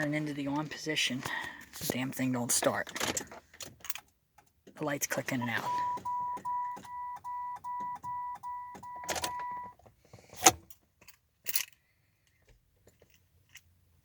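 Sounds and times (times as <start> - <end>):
car warning chime beeping: 5.4 - 9.8.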